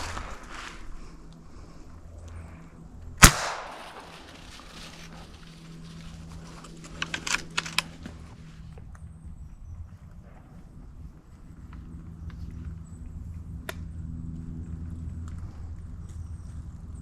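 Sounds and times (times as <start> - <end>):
loud sharp crack: 3.2 - 4.3.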